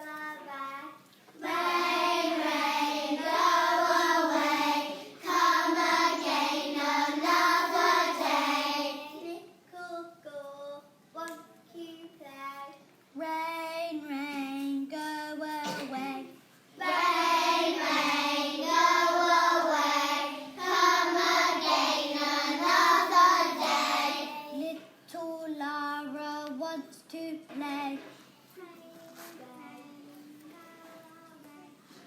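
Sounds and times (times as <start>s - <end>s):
children singing together: 1.4s - 9.2s, 16.8s - 24.8s.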